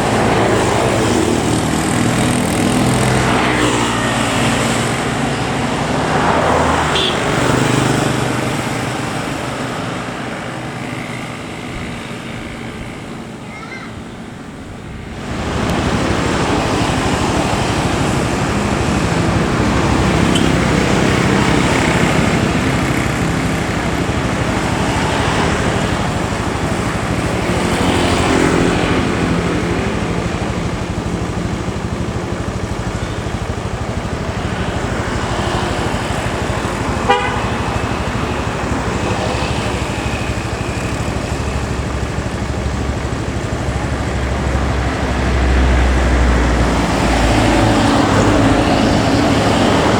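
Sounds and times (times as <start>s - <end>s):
bus running and road noise: 0.0s - 49.9s
multi-tone bus horn: 6.5s - 7.7s, 20.0s - 22.7s, 37.0s - 38.3s.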